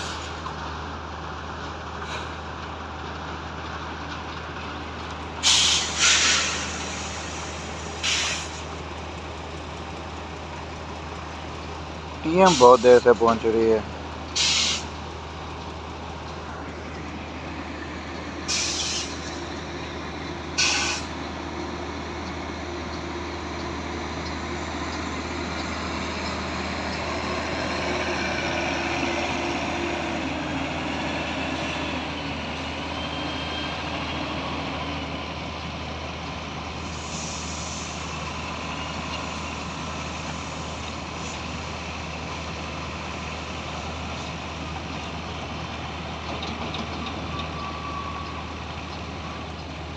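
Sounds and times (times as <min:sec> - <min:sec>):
heavy diesel engine running: 0:00.0 - 0:49.9
air release hisses: 0:05.4 - 0:08.7, 0:14.4 - 0:14.9, 0:18.5 - 0:19.4, 0:20.6 - 0:21.1.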